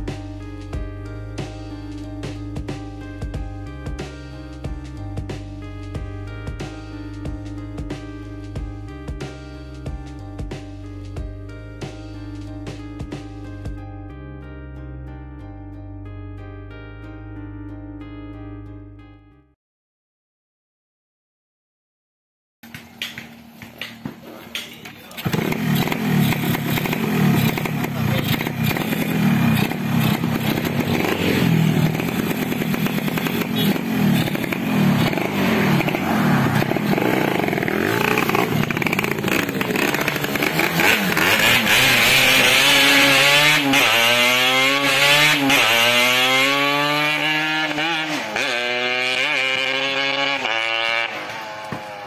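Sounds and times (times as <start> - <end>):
two-stroke motorcycle engine revving: 25.1 - 52.0.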